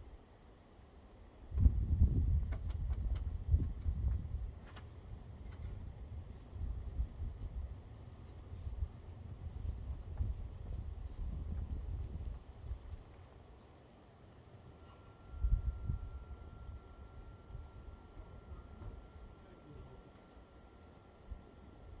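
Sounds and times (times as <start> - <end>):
crickets trilling: 0.2 - 22.0
faint low steady trill: 14.7 - 22.0.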